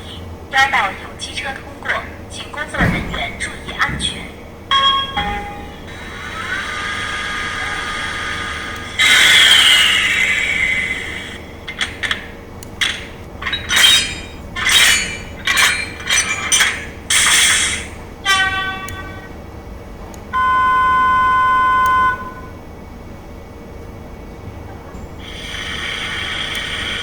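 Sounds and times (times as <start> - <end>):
steady high tone: 2.8 - 8.8, 20.4 - 22.6.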